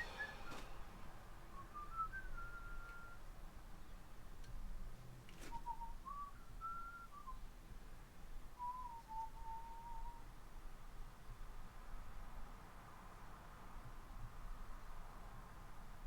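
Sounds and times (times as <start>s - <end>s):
person whistling: 0.0s - 0.9s.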